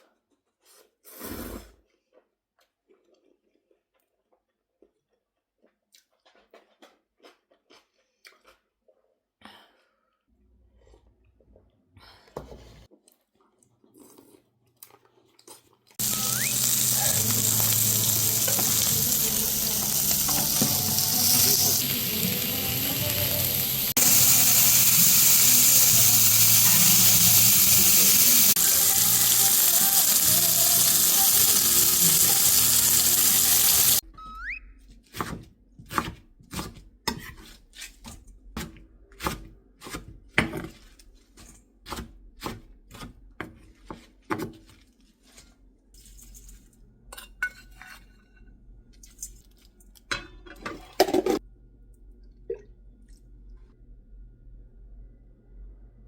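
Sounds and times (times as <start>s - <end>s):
loud steady hiss: 16.0s - 34.0s.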